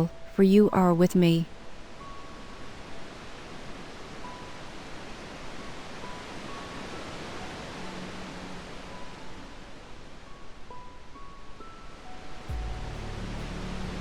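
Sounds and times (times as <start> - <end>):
ocean surf washing: 2.8 - 11.0.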